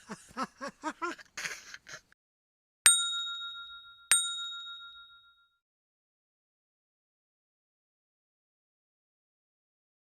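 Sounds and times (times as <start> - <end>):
bell dings: 2.9 - 5.6.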